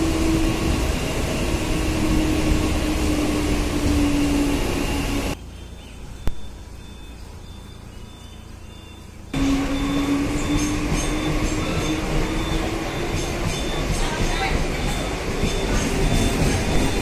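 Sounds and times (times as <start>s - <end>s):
electric train rumbling: 0.0s - 17.0s
motor whine: 6.2s - 13.1s.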